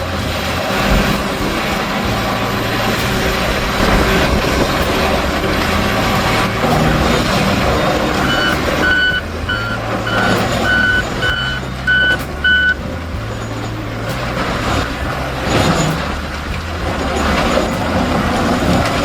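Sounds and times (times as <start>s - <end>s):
heavy machine engine running: 0.0s - 19.0s
reversing alarm beeping: 1.3s - 14.1s.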